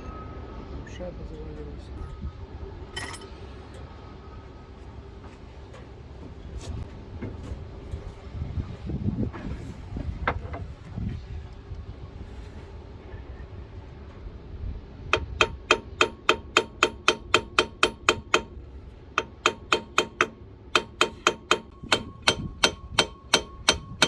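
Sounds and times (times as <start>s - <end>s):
hammer striking metal: 15.2s - 18.5s, 19.2s - 24.0s.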